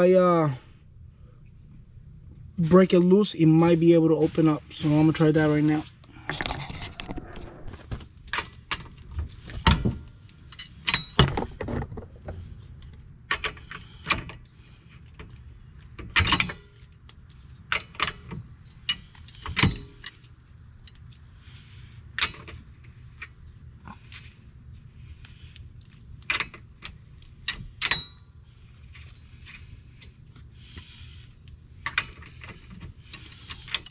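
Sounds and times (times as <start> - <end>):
hand tools clanking on metal: 31.9 - 33.9.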